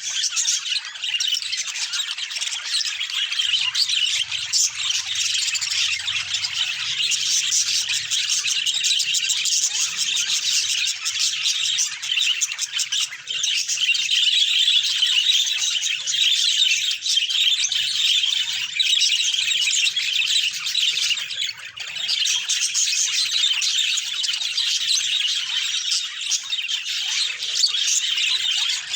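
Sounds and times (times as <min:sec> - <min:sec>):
budgies chirping and chattering: 0:00.0 - 0:28.9.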